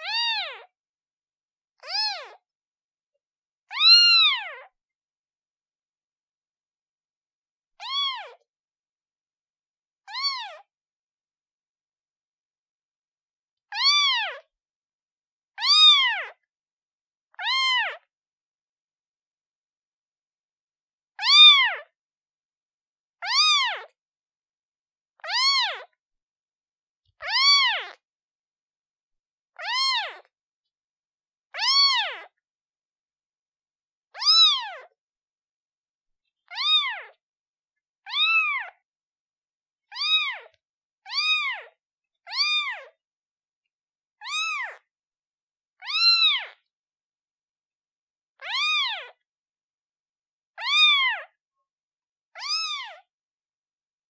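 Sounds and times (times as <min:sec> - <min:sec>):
kitten meowing: 0:00.0 - 0:00.7, 0:01.8 - 0:02.4, 0:03.7 - 0:04.7, 0:07.8 - 0:08.4, 0:10.1 - 0:10.6, 0:13.7 - 0:14.4, 0:15.6 - 0:16.4, 0:17.4 - 0:18.1, 0:21.2 - 0:21.8, 0:23.2 - 0:23.9, 0:25.2 - 0:25.9, 0:27.2 - 0:28.0, 0:29.6 - 0:30.3, 0:31.6 - 0:32.3, 0:34.2 - 0:34.9, 0:36.5 - 0:37.2, 0:38.1 - 0:38.8, 0:39.9 - 0:41.7, 0:42.3 - 0:43.0, 0:44.2 - 0:44.8, 0:45.8 - 0:46.6, 0:48.4 - 0:49.2, 0:50.6 - 0:51.3, 0:52.4 - 0:53.0.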